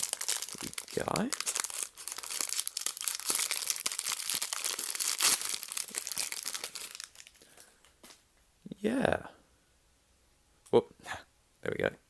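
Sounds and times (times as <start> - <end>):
plastic wrapping crinkling: 0.0 - 8.0.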